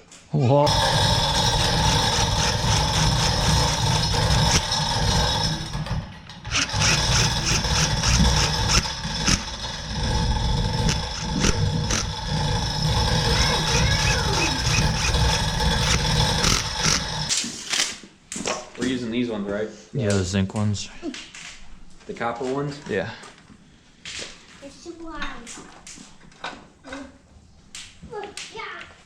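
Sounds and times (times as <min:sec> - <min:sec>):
machine motor whining and rumbling: 0:00.7 - 0:17.3.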